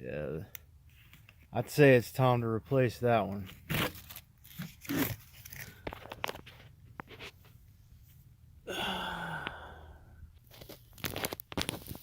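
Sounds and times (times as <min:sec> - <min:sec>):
air filter rustling and crinkling: 0:03.3 - 0:07.8, 0:10.4 - 0:12.0.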